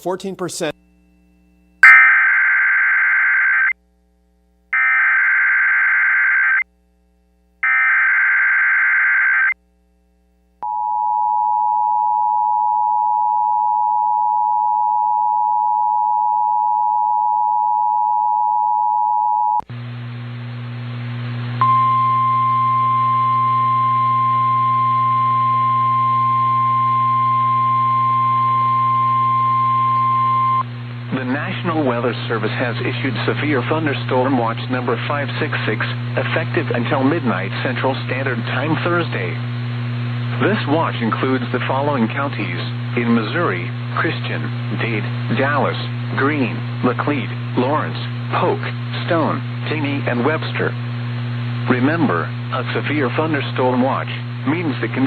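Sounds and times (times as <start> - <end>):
hissy humming radio reception: 0.0 - 1.2, 19.7 - 55.0
two-tone attention signal: 1.8 - 2.9
steady alarm tone: 1.8 - 3.7, 7.6 - 9.6.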